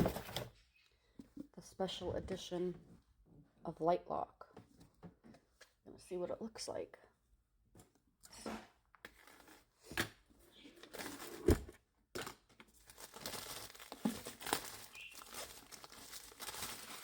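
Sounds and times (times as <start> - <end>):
packaging tearing and crinkling: 12.7 - 17.0.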